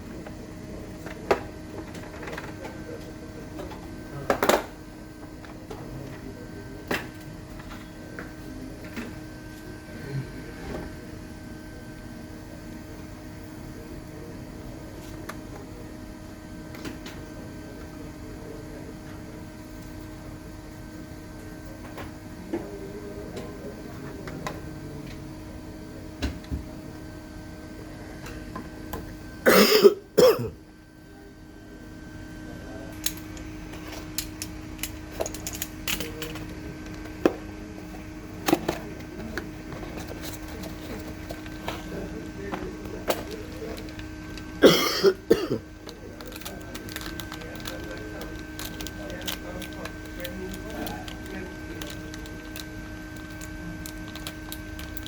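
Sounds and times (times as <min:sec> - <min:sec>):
steady electrical hum: 0:00.0 - 0:55.0.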